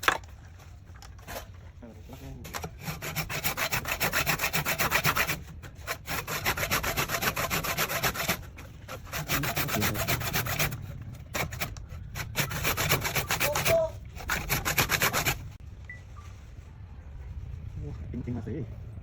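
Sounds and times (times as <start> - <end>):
turning tool scraping wood: 1.2 - 15.6.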